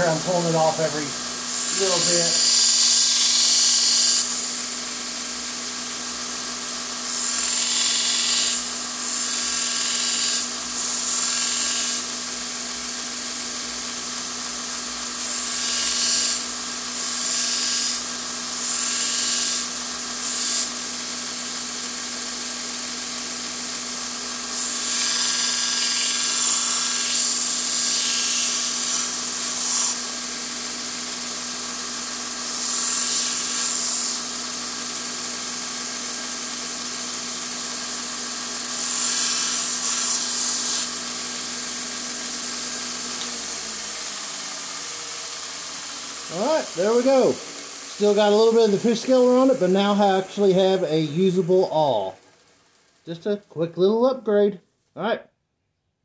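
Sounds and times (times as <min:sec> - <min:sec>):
hissy grinding of steel: 0:00.0 - 0:04.8, 0:07.1 - 0:12.1
power grinder humming: 0:00.0 - 0:53.2.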